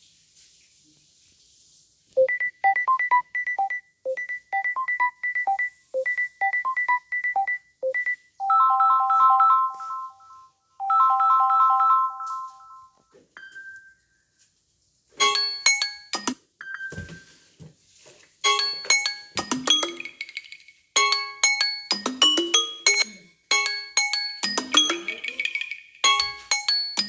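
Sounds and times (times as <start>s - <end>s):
beeping ringtone melody: 2.2s - 14.0s, 15.2s - 17.4s, 18.4s - 27.0s
chiming chord ringtone: 8.4s - 14.0s, 15.2s - 17.4s, 18.4s - 27.0s.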